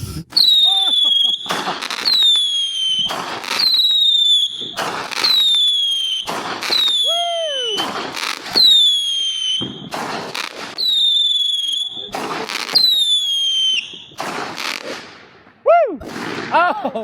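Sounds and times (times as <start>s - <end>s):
firework bangs: 0.3s - 17.0s
shrill firework whistle: 0.4s - 9.9s, 10.8s - 12.1s, 12.7s - 14.2s.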